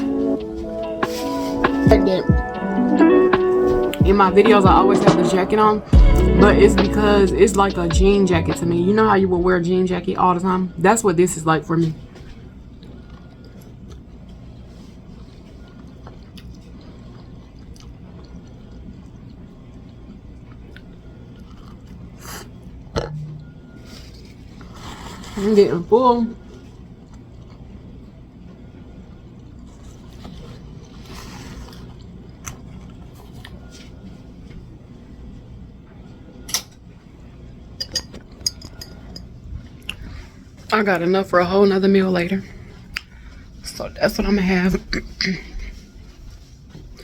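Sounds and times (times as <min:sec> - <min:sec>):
low steady hum: 0:00.0 - 0:47.0
scrape near a plate: 0:23.8 - 0:25.7, 0:29.8 - 0:31.9.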